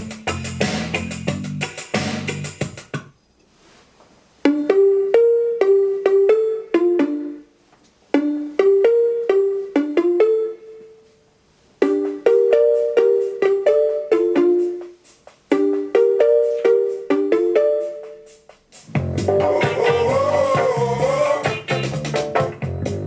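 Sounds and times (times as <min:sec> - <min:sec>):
music through valve amplifier: 0:00.0 - 0:03.1, 0:11.8 - 0:23.0.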